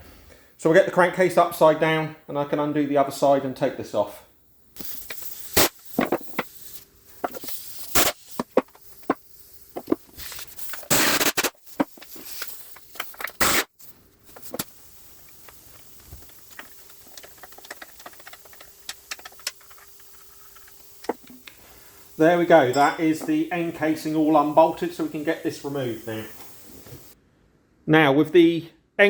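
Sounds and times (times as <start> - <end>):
spanner clicks: 15.3 - 21.6.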